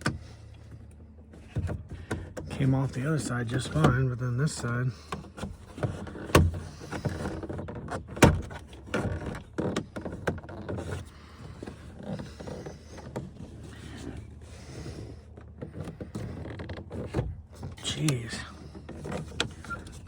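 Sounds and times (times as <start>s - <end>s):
truck door parts clattering: 5.0s - 20.0s.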